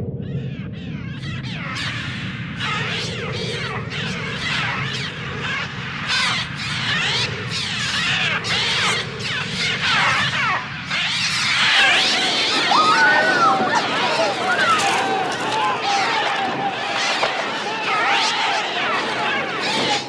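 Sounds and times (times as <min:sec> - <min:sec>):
steady low drone: 0:00.0 - 0:11.1.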